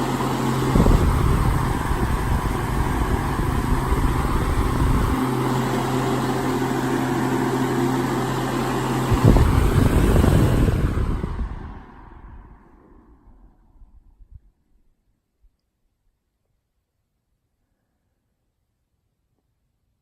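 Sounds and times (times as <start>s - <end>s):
air buffeting microphone: 0.0s - 5.3s, 9.0s - 14.4s
fan motor hum and air rush: 0.0s - 14.3s.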